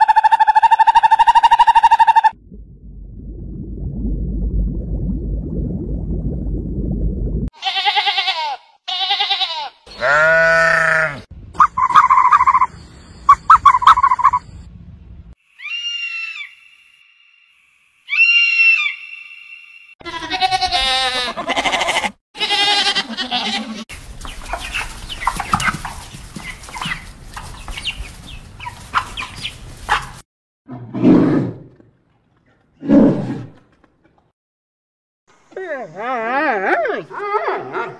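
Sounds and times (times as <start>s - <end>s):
arching animal cries: 7.6s - 12.7s, 20.0s - 23.8s
overlapping animal calls: 11.6s - 12.7s, 24.4s - 30.2s
high chirps: 11.6s - 14.7s.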